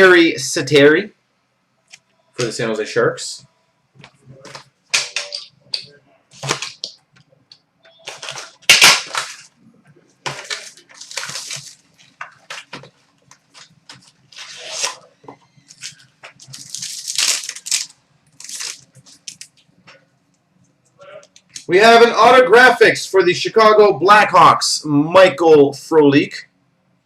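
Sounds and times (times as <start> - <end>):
foil wrappers crinkling and tearing: 8.0 - 9.6, 10.2 - 19.6.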